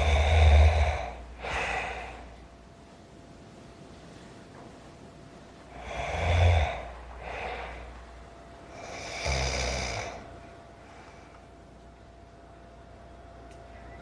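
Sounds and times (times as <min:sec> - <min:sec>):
person breathing heavily: 0:00.0 - 0:02.5, 0:05.7 - 0:11.6.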